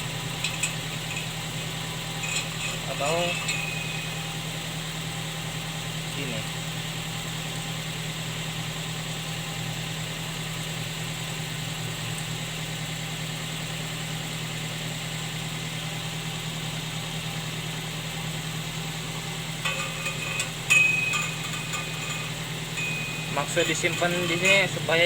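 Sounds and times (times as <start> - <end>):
light metallic clinks: 0.0 - 4.5, 19.6 - 25.0
vehicle engine idling: 0.0 - 25.0.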